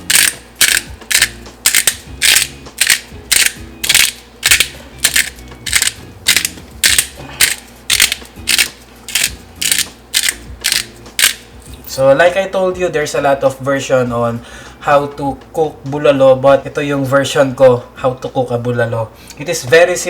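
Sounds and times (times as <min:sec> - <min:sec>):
pepper mill grinding: 0:00.0 - 0:12.0.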